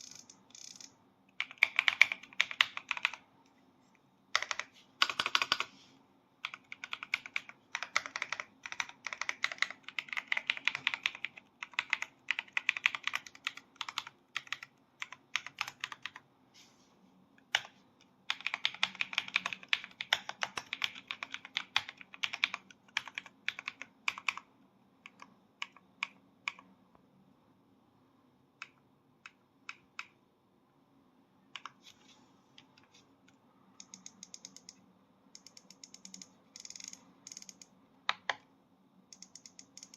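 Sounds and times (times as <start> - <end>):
mechanical keyboard typing: 0.0 - 3.2, 4.3 - 5.7, 6.4 - 16.2, 17.4 - 26.7, 33.8 - 34.8, 35.4 - 38.4, 39.1 - 39.9.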